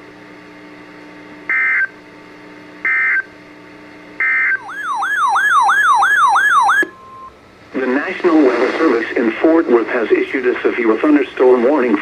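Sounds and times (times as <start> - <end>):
siren-like electronic alert tone: 4.2 - 7.3.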